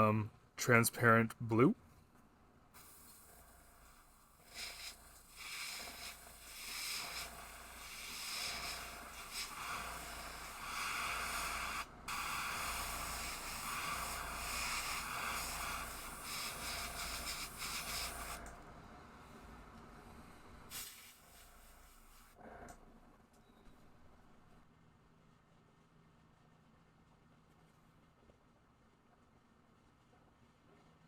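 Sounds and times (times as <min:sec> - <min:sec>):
airbrush spraying paint: 0:02.8 - 0:18.4, 0:20.7 - 0:22.4.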